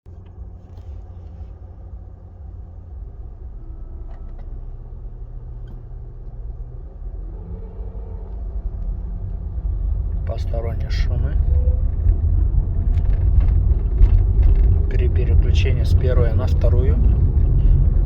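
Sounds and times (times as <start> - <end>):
car engine and road drone: 0.0 - 18.0.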